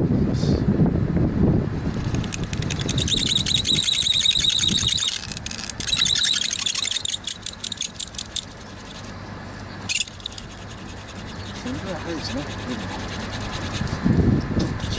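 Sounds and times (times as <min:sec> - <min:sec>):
wood squeaking on wood: 0:01.9 - 0:09.2, 0:09.8 - 0:14.0.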